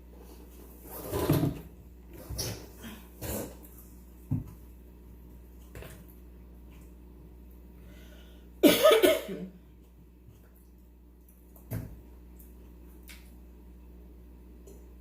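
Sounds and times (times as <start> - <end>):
person coughing: 8.6 - 9.6.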